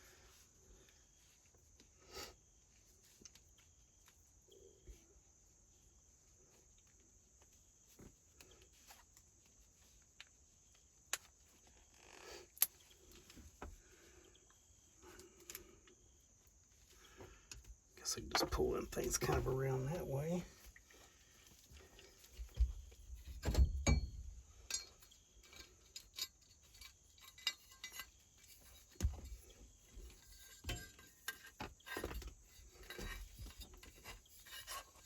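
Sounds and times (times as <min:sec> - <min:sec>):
small clicks and taps of wires: 0:10.1 - 0:11.4.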